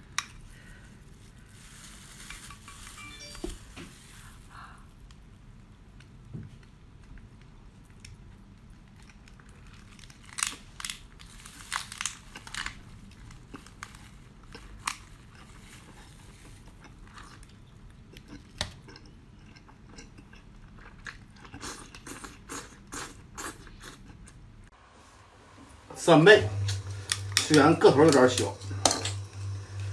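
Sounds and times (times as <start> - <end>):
person chewing crunchy food: 7.8 - 24.4.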